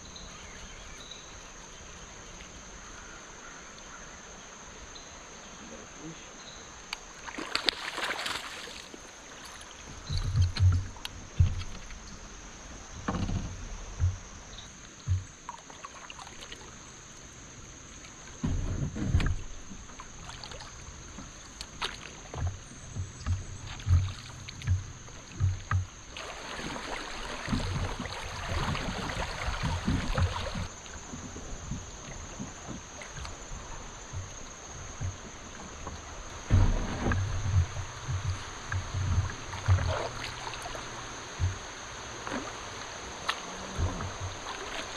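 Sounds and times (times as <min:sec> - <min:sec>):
water moving: 0:00.0 - 0:44.9
hissing splash noise: 0:07.2 - 0:09.6, 0:26.1 - 0:30.7
knocks on plastic hull: 0:13.0 - 0:14.3, 0:15.0 - 0:15.3, 0:22.4 - 0:25.9, 0:27.4 - 0:30.7, 0:41.4 - 0:41.7.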